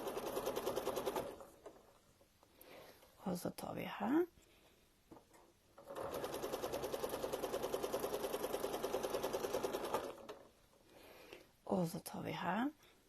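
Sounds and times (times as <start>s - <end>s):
sewing machine stitching: 0.0s - 1.9s, 5.8s - 10.5s.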